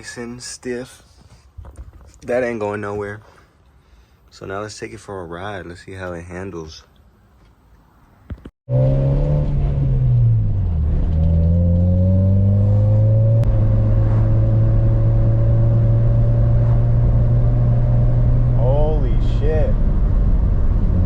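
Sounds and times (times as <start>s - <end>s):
car engine accelerating: 8.7s - 21.0s.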